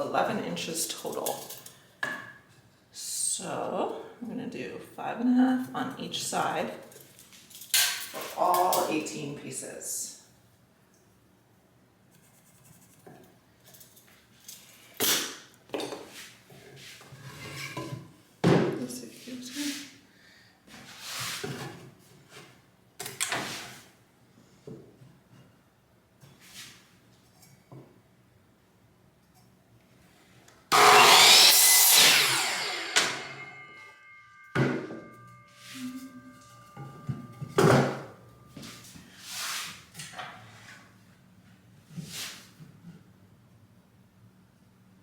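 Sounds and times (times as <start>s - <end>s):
power saw cutting wood: 30.7s - 35.8s
saw blade winding down: 30.7s - 36.5s
brief ringing note: 33.1s - 38.1s.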